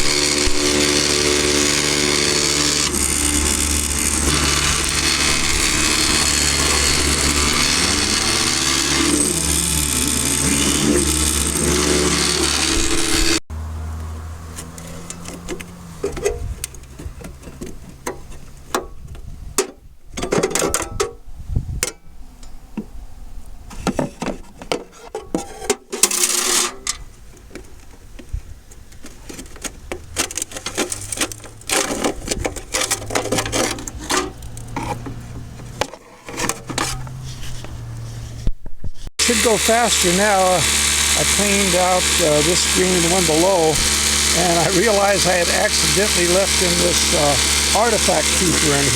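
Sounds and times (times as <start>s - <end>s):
low motor hum: 0.0s - 18.7s, 36.4s - 48.9s
metal clanks and scrapes: 14.5s - 21.2s, 23.7s - 27.1s, 29.0s - 39.1s.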